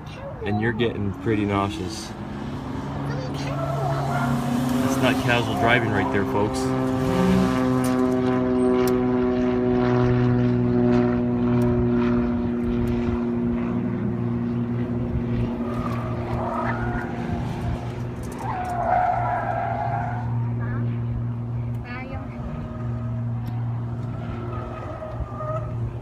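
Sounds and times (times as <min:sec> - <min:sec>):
engine drone: 0:00.0 - 0:26.0.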